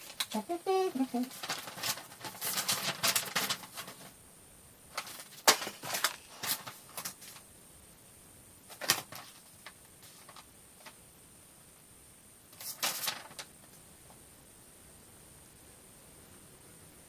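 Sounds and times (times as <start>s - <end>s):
hands clicking and rustling: 0.0s - 4.1s, 4.9s - 7.4s, 8.7s - 11.0s.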